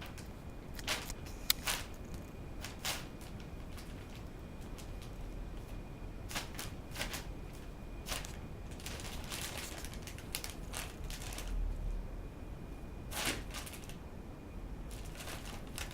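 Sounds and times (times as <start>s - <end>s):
kitten clawing in a basket: 0.0s - 5.7s, 6.3s - 11.5s, 13.1s - 14.0s
steady low hum: 0.0s - 15.9s.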